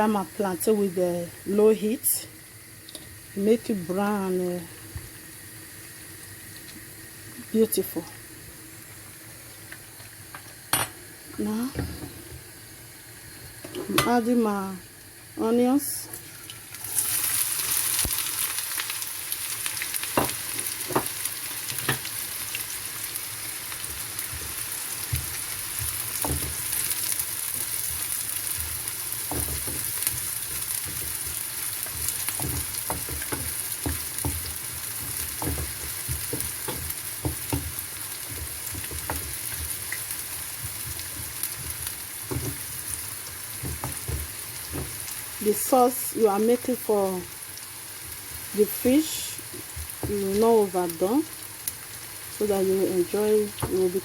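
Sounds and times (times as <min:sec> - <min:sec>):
onions sizzling in oil: 0:00.0 - 0:54.0
spoon knocking against pan: 0:31.8 - 0:39.8.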